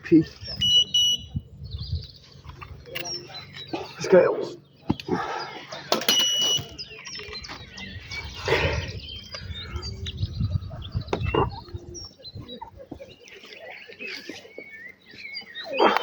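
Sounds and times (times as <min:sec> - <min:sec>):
birds chirping: 0:00.0 - 0:16.0
short electronic beep: 0:05.9 - 0:06.8.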